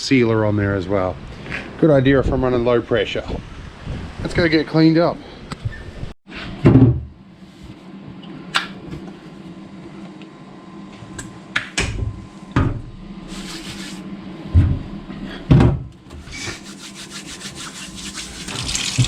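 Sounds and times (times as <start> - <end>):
steady low hum: 7.0 - 18.6.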